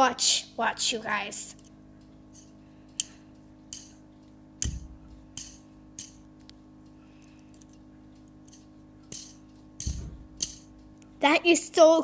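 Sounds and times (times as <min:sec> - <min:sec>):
faint steady hum: 0:00.0 - 0:12.0
dull thump knock: 0:04.6 - 0:05.1, 0:09.8 - 0:10.5.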